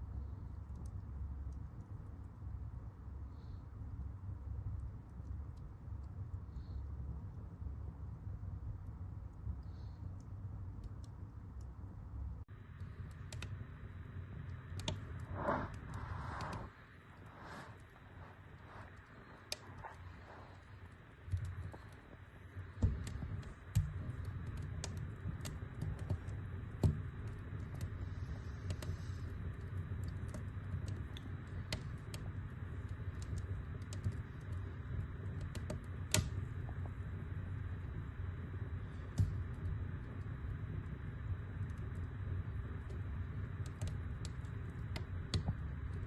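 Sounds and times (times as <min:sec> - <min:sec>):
low rumble of flames: 0:00.0 - 0:46.0
logs crackling and popping: 0:12.7 - 0:46.0.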